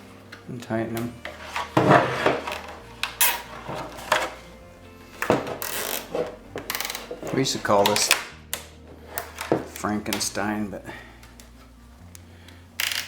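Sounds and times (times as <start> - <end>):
plastic clicks and clatter: 5.2 - 10.3.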